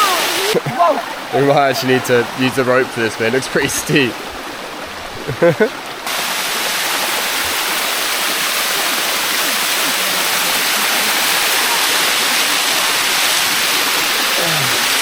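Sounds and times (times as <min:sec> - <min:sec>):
waterfall rushing over rock: 0:00.0 - 0:15.0.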